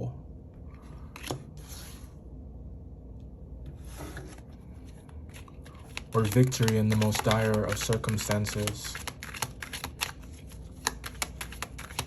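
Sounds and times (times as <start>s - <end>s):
low room hum: 0.0s - 12.0s
cards sliding and rubbing: 1.1s - 2.2s, 3.8s - 12.0s.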